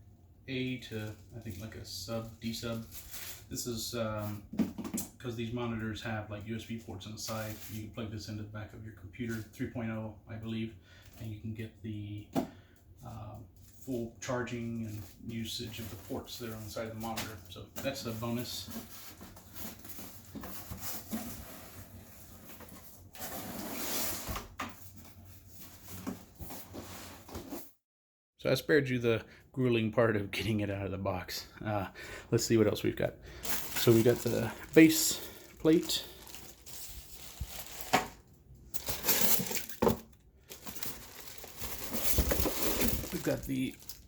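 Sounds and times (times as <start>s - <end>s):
packaging rustling: 33.3s - 44.0s.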